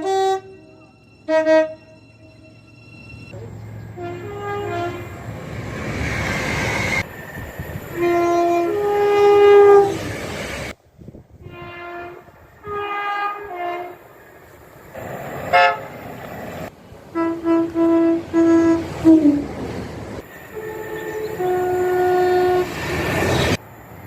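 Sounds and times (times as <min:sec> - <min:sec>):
train horn two-note blasts: 0:00.0 - 0:02.5, 0:03.9 - 0:05.2, 0:08.0 - 0:10.0, 0:11.4 - 0:14.0, 0:15.5 - 0:16.0, 0:17.1 - 0:19.4, 0:20.5 - 0:22.8.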